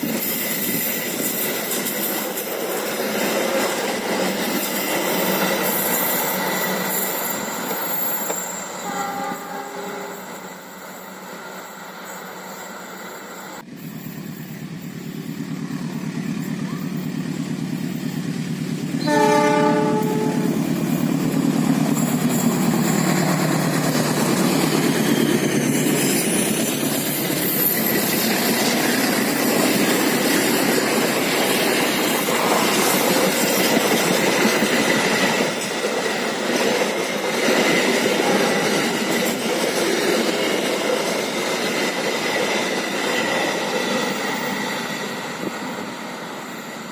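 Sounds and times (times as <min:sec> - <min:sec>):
train wheels on rails clattering: 0:00.0 - 0:11.8, 0:13.6 - 0:46.9
locomotive engine drone: 0:06.3 - 0:36.2
train horn blast: 0:08.8 - 0:10.3, 0:19.0 - 0:20.7.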